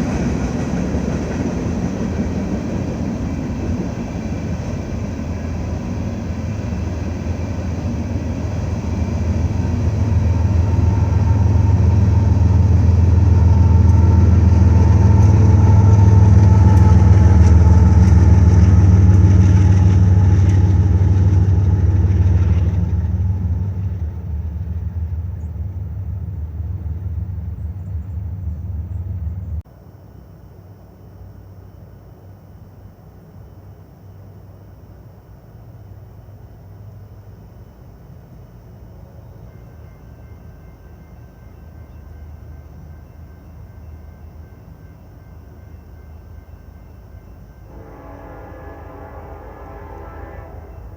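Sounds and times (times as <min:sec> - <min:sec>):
freight train rumbling past: 0:00.0 - 0:29.6, 0:37.9 - 0:50.9.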